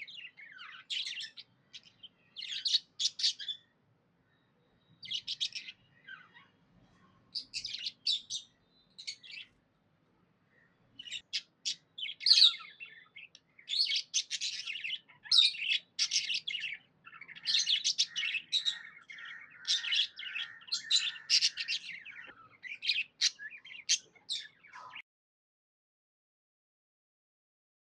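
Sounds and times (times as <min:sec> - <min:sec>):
budgerigar chirping: 0:00.0 - 0:03.7, 0:05.0 - 0:06.4, 0:07.4 - 0:09.5, 0:11.0 - 0:25.0.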